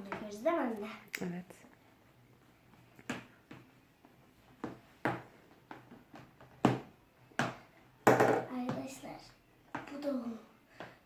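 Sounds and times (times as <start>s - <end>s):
containers and utensils knocking: 8.1s - 8.5s.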